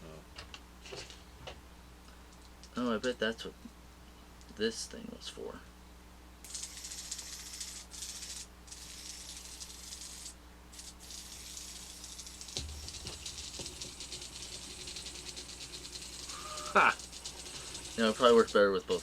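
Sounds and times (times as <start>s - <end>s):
toy robot rattling: 6.5s - 19.0s
low thump: 12.6s - 13.8s.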